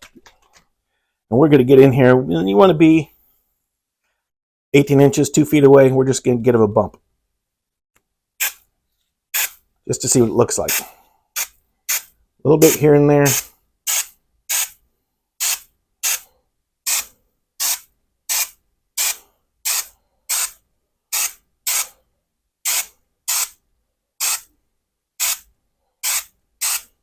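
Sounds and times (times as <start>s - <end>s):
aerosol spray can hissing: 8.4s - 8.6s, 9.4s - 9.6s, 11.4s - 12.1s, 13.3s - 14.8s, 15.4s - 16.2s, 16.9s - 21.9s, 22.6s - 23.6s, 24.2s - 24.5s, 25.2s - 25.4s, 26.0s - 26.9s.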